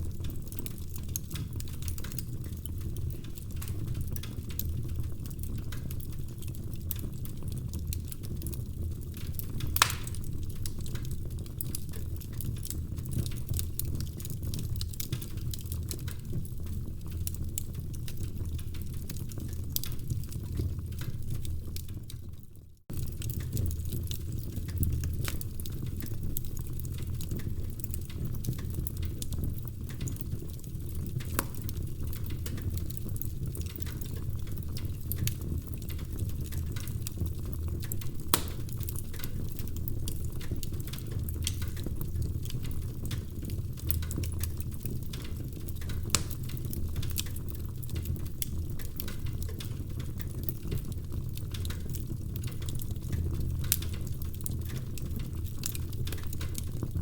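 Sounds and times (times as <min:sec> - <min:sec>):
low rumble of flames: 0:00.0 - 0:57.0
logs crackling: 0:09.6 - 0:10.3, 0:29.9 - 0:34.1, 0:35.1 - 0:39.7
loud pops of fire: 0:09.6 - 0:10.6, 0:31.2 - 0:32.8, 0:38.2 - 0:39.4.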